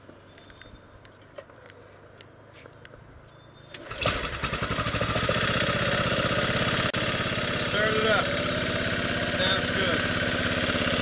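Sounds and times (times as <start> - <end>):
atv engine starting and running: 3.6 - 11.0.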